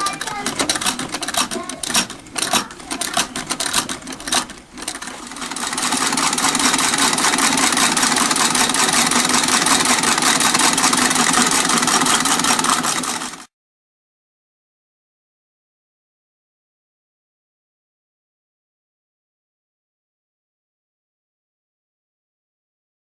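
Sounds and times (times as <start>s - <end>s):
sewing machine clattering: 0.0s - 13.5s.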